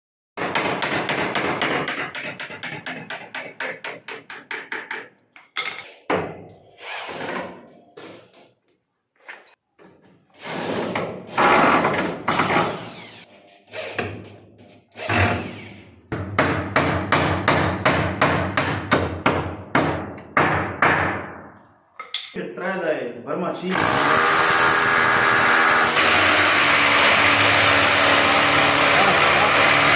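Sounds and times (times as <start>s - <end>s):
rapid hammering on wood: 0.4s - 5.2s, 16.2s - 21.3s
noisy tool work: 6.7s - 7.6s, 10.3s - 15.9s, 23.7s - 29.9s.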